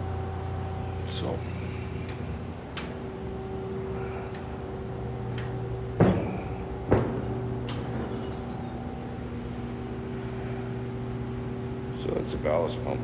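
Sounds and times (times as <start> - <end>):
engine-room machinery hum: 0.0 - 13.0
loud knocks: 5.4 - 9.1.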